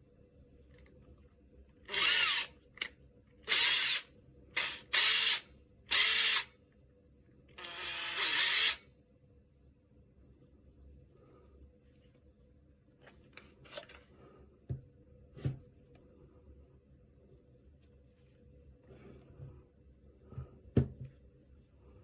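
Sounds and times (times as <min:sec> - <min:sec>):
impact driver motor spinning: 0:01.9 - 0:02.5, 0:03.5 - 0:04.0, 0:04.6 - 0:06.5, 0:07.6 - 0:08.8.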